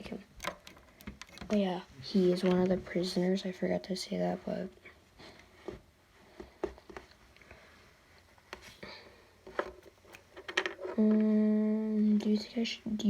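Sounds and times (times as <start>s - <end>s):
small plastic clicks: 0.4s - 1.6s.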